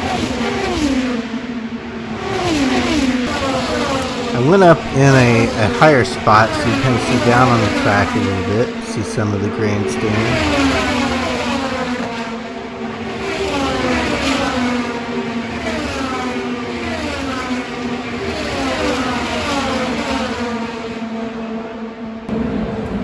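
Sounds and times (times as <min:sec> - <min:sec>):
cars around the track: 0:00.0 - 0:23.0
race cars passing at full speed: 0:00.0 - 0:23.0.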